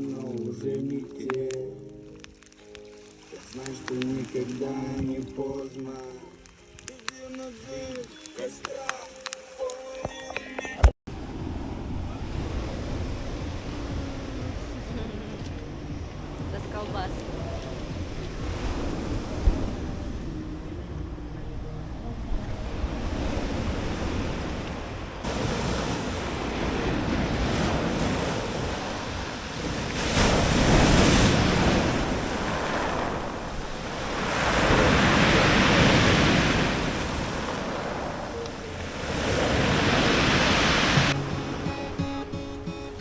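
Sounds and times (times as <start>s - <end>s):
guitar music: 0.0s - 10.9s, 13.4s - 19.0s, 38.1s - 43.0s
waves breaking: 0.0s - 43.0s
wind buffeting microphone: 11.1s - 41.3s.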